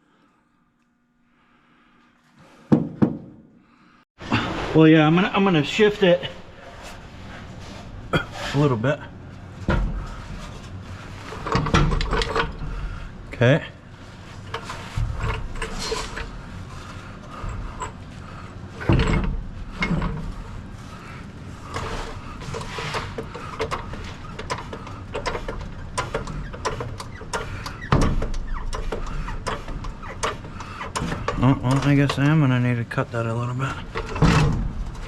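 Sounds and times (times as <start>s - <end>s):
heavy knocks: 2.7s - 3.4s
metal clicks and clanks: 11.3s - 12.7s, 21.7s - 32.4s.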